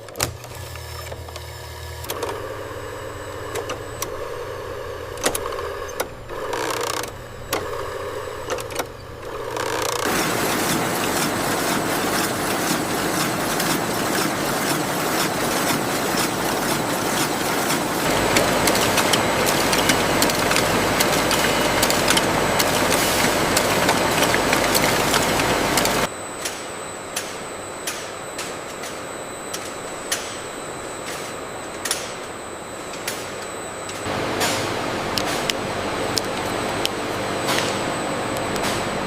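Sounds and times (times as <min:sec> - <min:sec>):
factory machinery running: 0:00.0 - 0:39.0
sharp mechanical clicks and knocks: 0:05.1 - 0:10.1.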